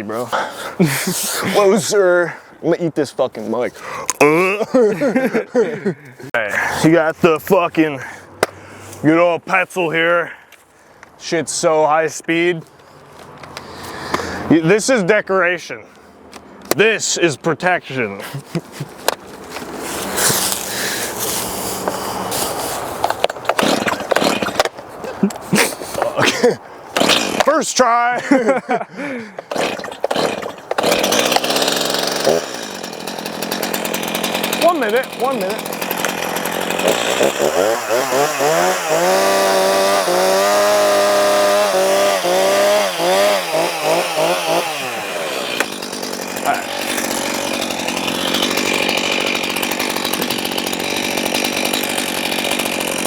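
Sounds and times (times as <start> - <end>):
chainsaw revving: 19.9 - 24.7, 27.0 - 27.5, 29.4 - 53.0.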